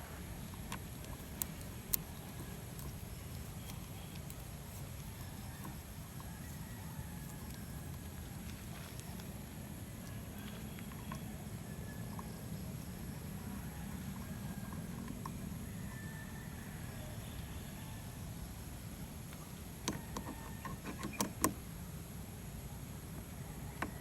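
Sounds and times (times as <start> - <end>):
hand tools and bolts clicking: 0.4 - 9.3, 19.8 - 21.6.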